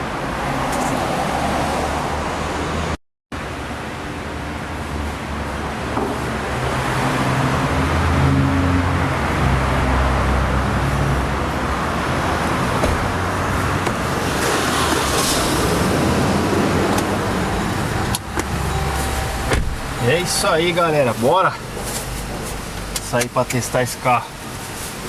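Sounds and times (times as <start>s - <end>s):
road traffic: 0.0s - 25.0s
car engine running: 11.2s - 15.5s.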